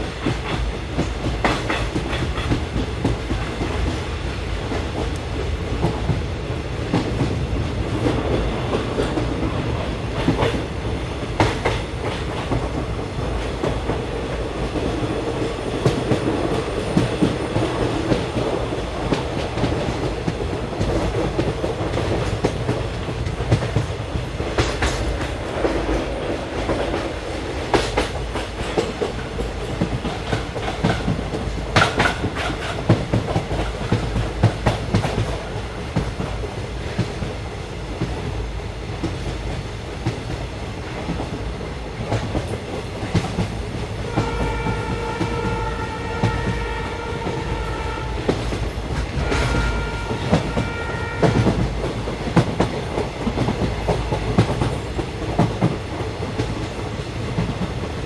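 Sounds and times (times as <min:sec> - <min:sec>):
train wheels clacking over rail joints: 0:00.0 - 0:06.3, 0:11.2 - 0:37.4, 0:42.0 - 0:58.0
train rumbling: 0:00.0 - 0:58.0.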